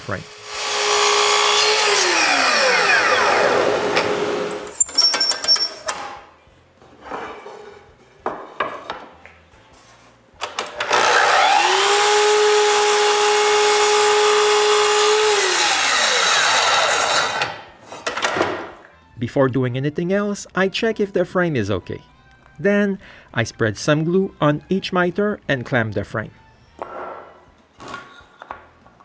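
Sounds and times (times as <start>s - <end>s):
power saw spinning: 0.3s - 5.8s, 10.8s - 17.5s.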